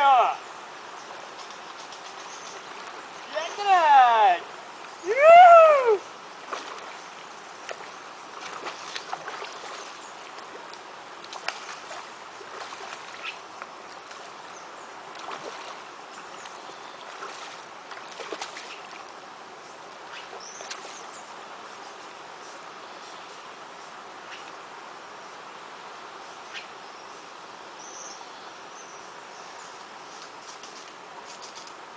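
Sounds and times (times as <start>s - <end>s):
running water hissing: 0.0s - 25.4s
small splashes and clicks: 1.2s - 3.0s, 7.6s - 14.3s, 15.1s - 15.8s, 16.4s - 19.1s.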